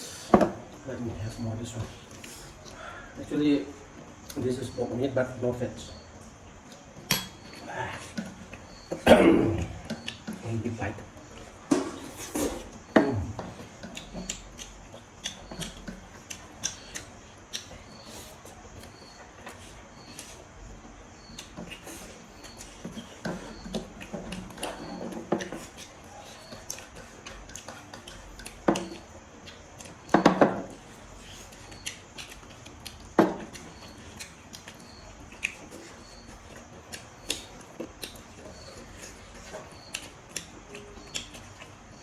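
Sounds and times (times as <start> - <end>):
faint high chirp: 7.1 - 10.2
person chewing: 11.3 - 20.5, 21.2 - 41.9.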